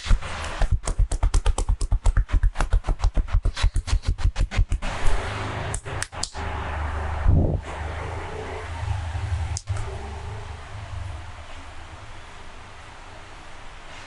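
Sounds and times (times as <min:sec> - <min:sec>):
hands slapping in chopping massage: 0:00.0 - 0:04.8
hands rubbing over skin: 0:00.6 - 0:04.4.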